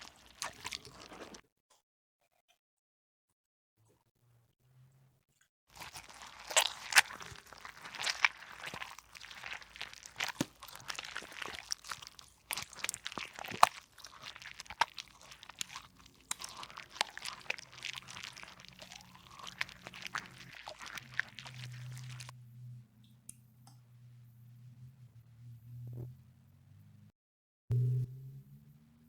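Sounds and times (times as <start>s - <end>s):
slime crackling and popping: 0.0s - 1.4s, 5.7s - 22.3s.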